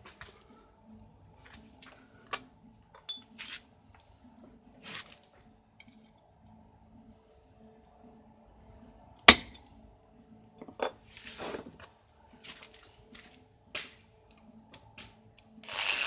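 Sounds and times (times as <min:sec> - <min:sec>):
small steel parts clinking: 0:02.9 - 0:03.6.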